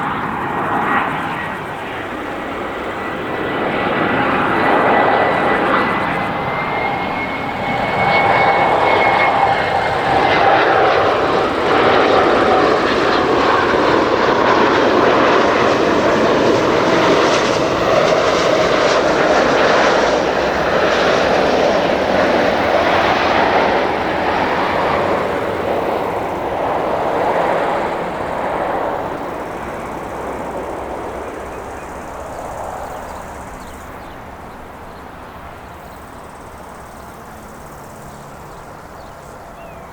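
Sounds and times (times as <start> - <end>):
jet plane passing with high whine: 0.0 - 39.9.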